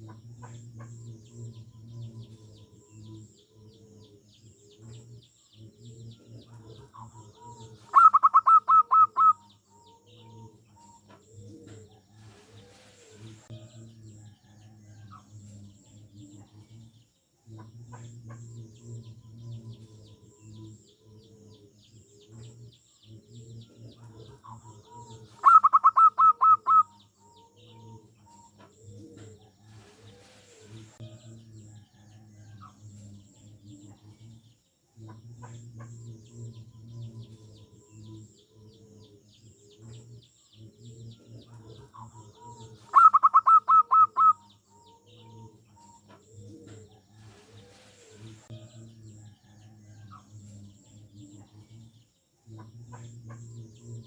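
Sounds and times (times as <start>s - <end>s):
faint high chirping: 0.0s - 16.1s, 18.3s - 34.5s, 35.5s - 51.6s
soft low dove calls: 4.0s - 13.5s, 23.2s - 31.0s, 37.6s - 48.5s
dove staccato call: 6.5s - 10.1s, 24.0s - 31.0s, 41.5s - 48.5s.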